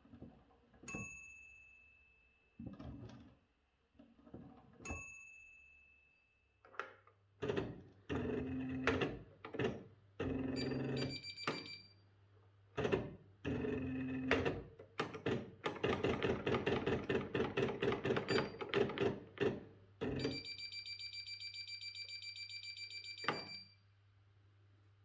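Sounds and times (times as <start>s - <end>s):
pulsing electronic warning beep: 10.6s - 11.9s.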